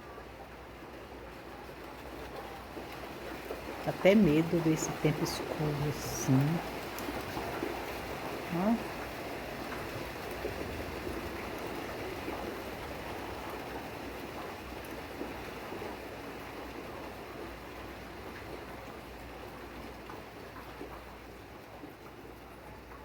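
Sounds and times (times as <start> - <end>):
heavy rain falling: 3.8 - 13.8.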